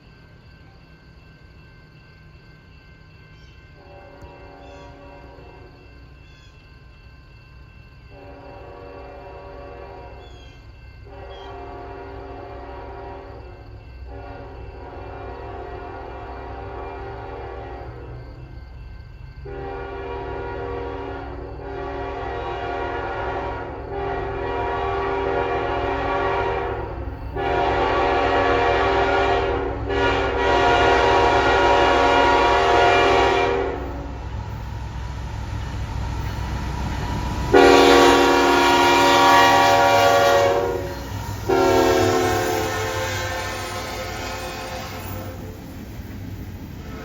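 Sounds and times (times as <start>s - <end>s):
locomotive air horn blasts: 8.2s - 10.2s, 11.1s - 13.4s, 14.1s - 18.0s, 19.5s - 26.8s, 27.4s - 34.0s, 37.5s - 45.4s.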